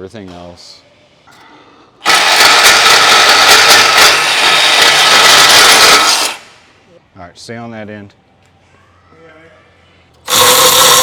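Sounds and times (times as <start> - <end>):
power tool rattling: 2.0 - 6.6, 10.3 - 11.0.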